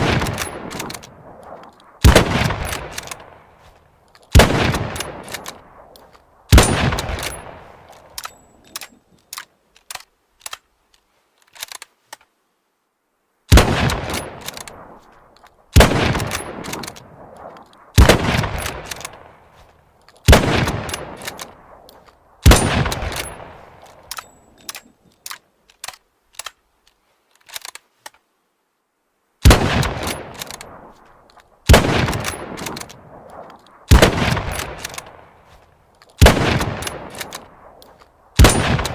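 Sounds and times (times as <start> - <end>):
rifle shots with echo: 0.0 - 3.7, 4.3 - 8.4, 13.5 - 15.1, 15.7 - 19.6, 20.2 - 24.4, 29.4 - 35.6, 36.2 - 38.9
rifle bolt clicks: 0.1 - 12.3, 13.8 - 28.2, 30.0 - 38.9.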